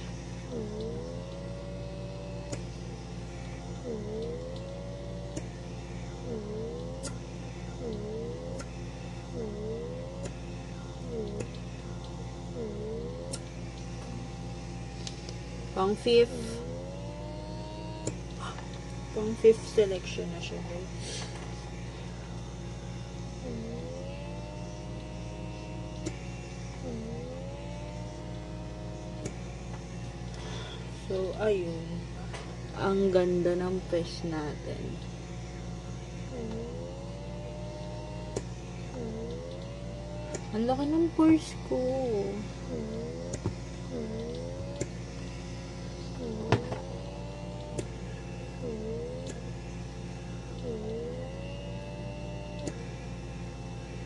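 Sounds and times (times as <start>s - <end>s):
vacuum motor hum: 0.0s - 54.0s
whine dipping in pitch: 36.3s - 49.6s
sharp clicks: 42.9s - 45.0s.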